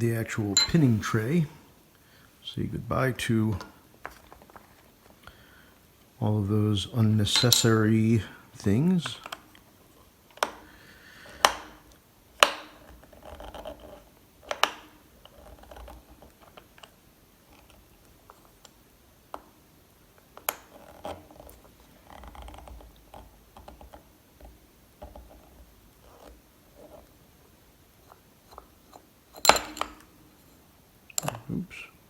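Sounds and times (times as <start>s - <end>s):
metal parts clicking and tapping: 0.6s - 1.0s, 7.3s - 8.1s, 28.5s - 30.1s, 31.1s - 31.5s
light metal rattling: 7.2s - 9.3s, 29.3s - 30.1s.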